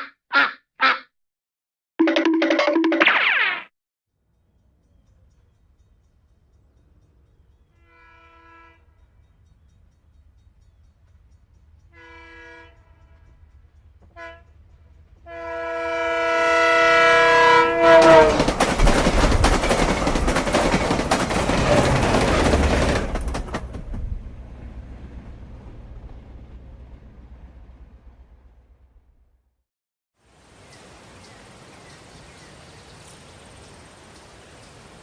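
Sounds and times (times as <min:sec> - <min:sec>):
train rumble and wheel clatter: 0:04.4 - 0:29.4
train horn blasts: 0:07.6 - 0:09.2, 0:11.8 - 0:18.6.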